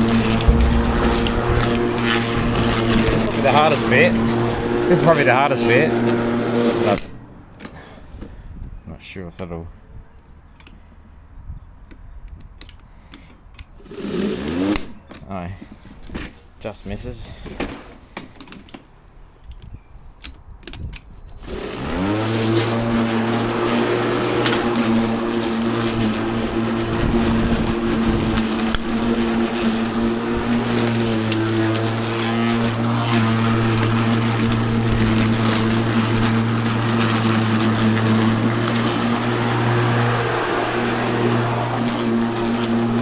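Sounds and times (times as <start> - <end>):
electric lawn mower motor humming: 0.0 - 7.2, 13.9 - 14.9, 21.4 - 43.0.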